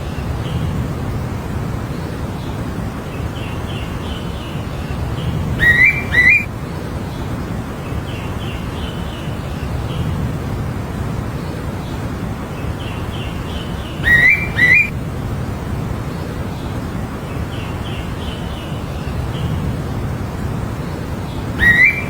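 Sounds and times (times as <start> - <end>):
bird chirps: 3.4 - 6.5, 12.8 - 15.0, 21.4 - 22.0
bird whistles: 5.6 - 6.5, 14.0 - 15.0, 21.6 - 22.0.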